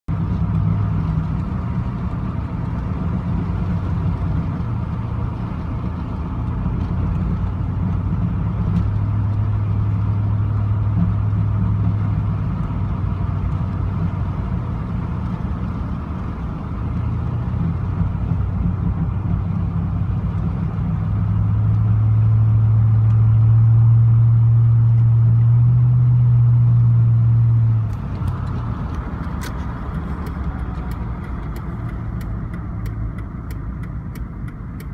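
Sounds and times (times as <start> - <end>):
truck engine low hum: 0.1 - 34.9.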